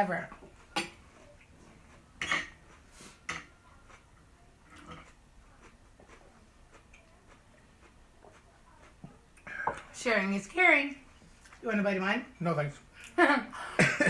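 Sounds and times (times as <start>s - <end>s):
fork scraping a plate: 1.8s - 3.5s.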